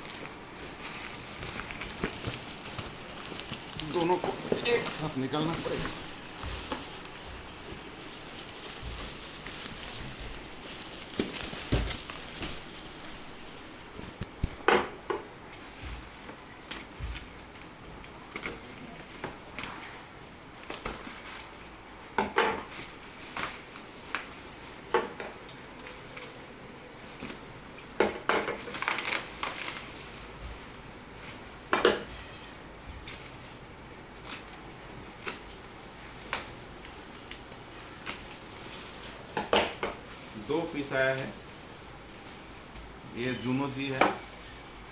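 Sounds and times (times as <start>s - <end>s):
packaging knocks and scrapes: 0.0s - 13.4s.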